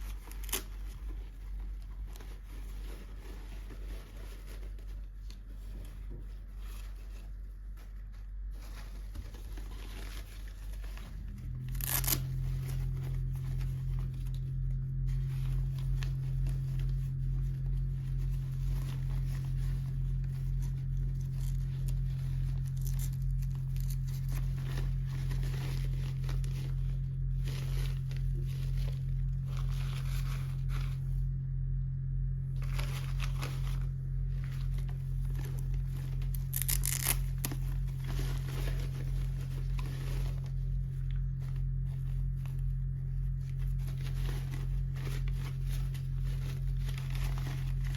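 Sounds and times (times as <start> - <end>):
steady low hum: 0.0 - 47.9
packaging torn and crinkled: 11.6 - 13.0, 34.7 - 40.6.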